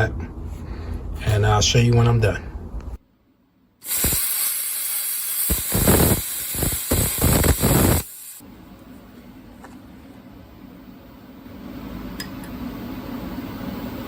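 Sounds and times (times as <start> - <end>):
steady hum: 0.0 - 14.0
plasma cutter hissing: 3.8 - 8.4.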